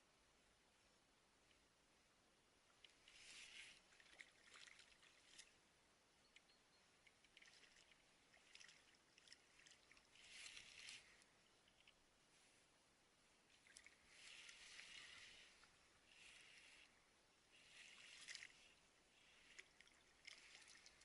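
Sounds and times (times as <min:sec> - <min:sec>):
rustling swishes: 0:09.9 - 0:11.3, 0:13.5 - 0:21.0.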